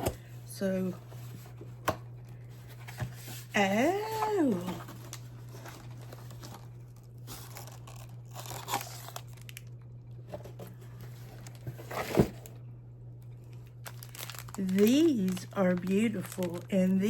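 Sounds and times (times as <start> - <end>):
cardboard packaging rustled and torn: 2.7 - 9.7, 10.3 - 12.5, 13.6 - 17.0.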